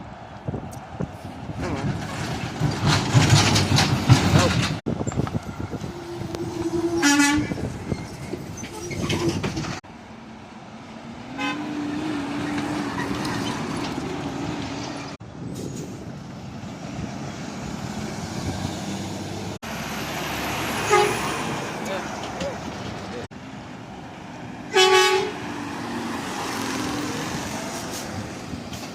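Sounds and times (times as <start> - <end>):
road traffic: 0.0 - 28.9
truck air horn blasts: 5.9 - 7.7, 11.3 - 12.1, 20.8 - 21.4, 24.7 - 25.5.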